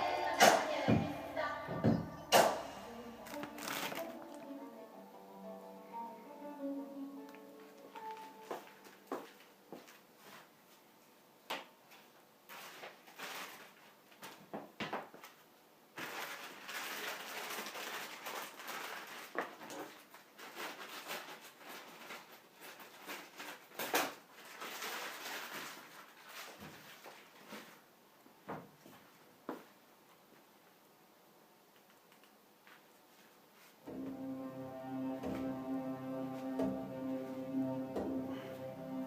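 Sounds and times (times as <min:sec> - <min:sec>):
rustling: 0:03.2 - 0:04.5, 0:16.0 - 0:27.9.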